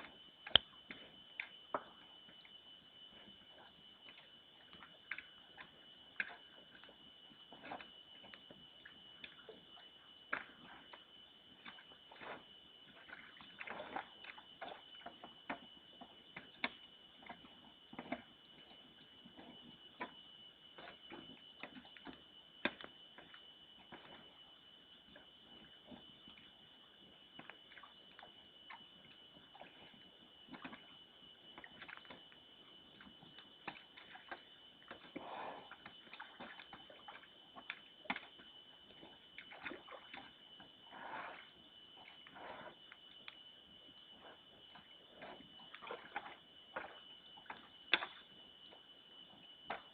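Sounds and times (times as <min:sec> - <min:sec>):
high-pitched whine: 0:00.0 - 0:49.9
small clicks: 0:00.5 - 0:00.7.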